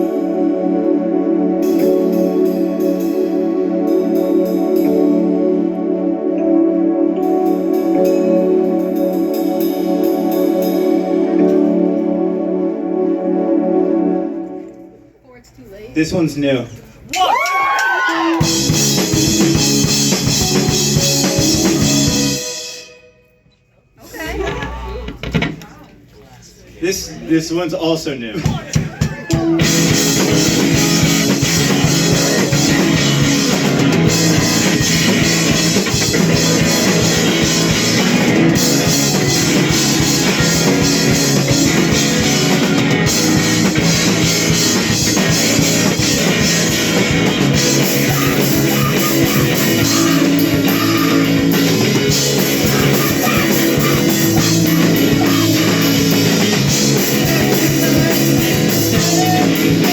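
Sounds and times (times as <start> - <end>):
rock band playing live: 0.0 - 12.0, 18.0 - 23.1, 28.7 - 59.9
electric guitars: 0.0 - 12.8, 17.9 - 22.7, 29.2 - 59.9
drum kit: 1.6 - 5.6, 7.2 - 11.8, 17.2 - 23.0, 28.4 - 59.9.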